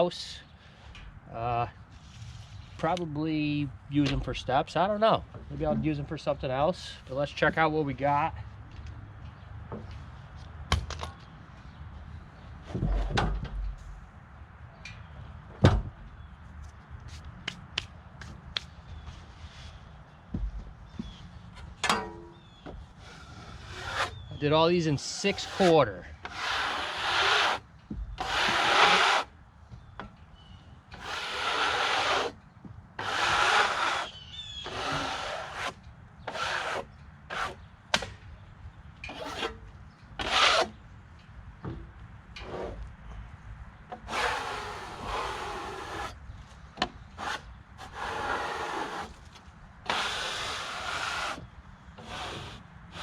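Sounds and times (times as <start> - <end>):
boards scraping against wood: 22.4 - 29.3, 30.9 - 32.4, 33.0 - 37.7, 39.1 - 40.8, 43.9 - 46.2, 46.8 - 53.0.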